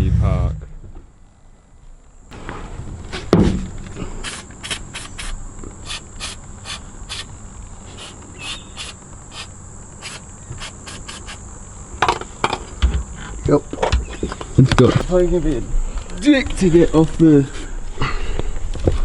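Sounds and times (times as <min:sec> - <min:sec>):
heavy thump: 0:00.0 - 0:01.1, 0:03.1 - 0:03.8
insect chirring: 0:03.7 - 0:17.5.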